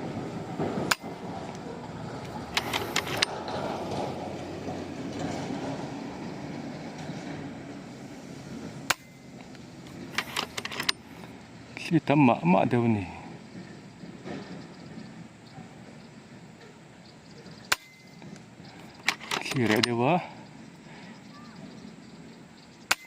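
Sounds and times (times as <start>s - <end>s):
steady background hiss: 0.0s - 23.0s
quick clicks: 2.2s - 3.4s, 9.9s - 11.0s, 17.7s - 20.0s.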